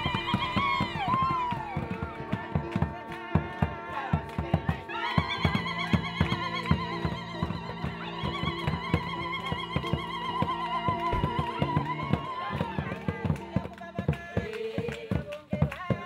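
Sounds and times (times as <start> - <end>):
steady drum beat: 9.8 - 16.0.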